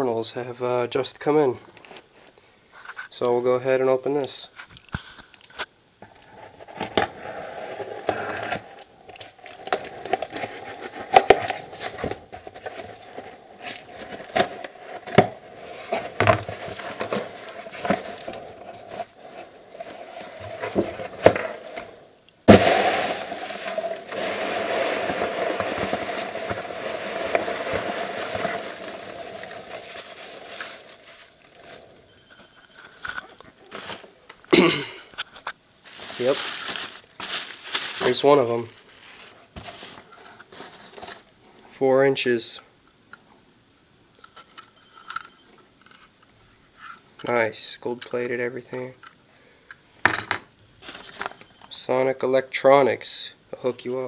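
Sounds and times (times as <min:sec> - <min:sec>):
continuous rustling: 0:04.5 - 0:34.5, 0:35.1 - 0:41.4
packaging crinkling and clicking: 0:07.8 - 0:21.9, 0:22.5 - 0:32.1, 0:35.2 - 0:41.3.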